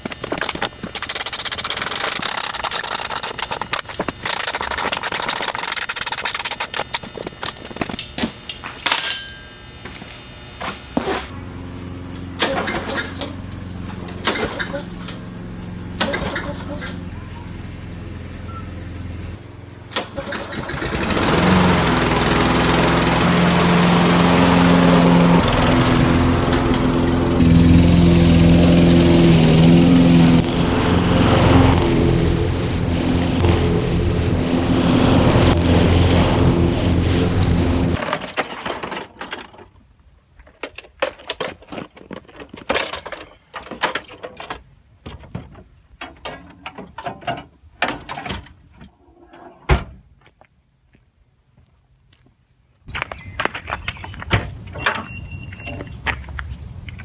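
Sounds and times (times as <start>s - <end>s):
lawnmower engine running: 0.0s - 38.4s, 52.9s - 57.0s.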